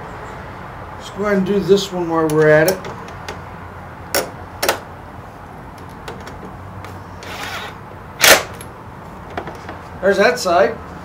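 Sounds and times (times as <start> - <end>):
screws scraping: 7.2 - 8.6.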